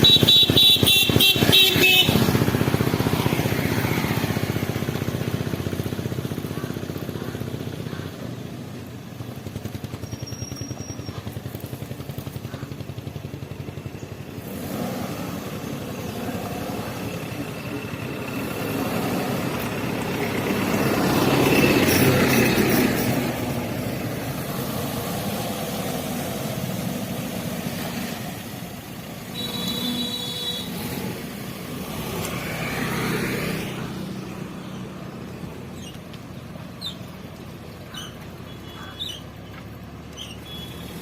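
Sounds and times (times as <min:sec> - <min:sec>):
car engine running: 0:04.6 - 0:08.1, 0:09.1 - 0:21.8.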